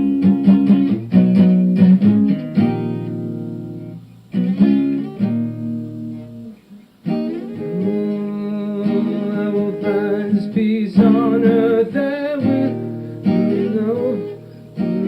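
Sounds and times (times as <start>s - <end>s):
guitar chords ringing: 0.0s - 15.0s.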